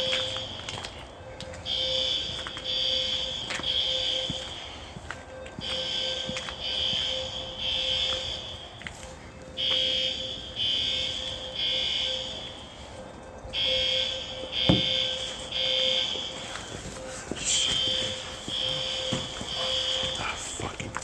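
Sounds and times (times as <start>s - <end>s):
fire alarm horn blasts: 0.0s - 20.8s
thump: 14.7s - 15.0s.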